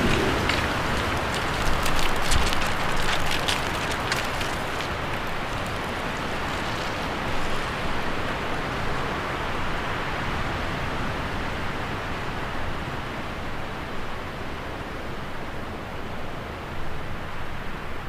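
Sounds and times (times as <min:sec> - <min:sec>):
falling water rushing: 0:00.0 - 0:10.1.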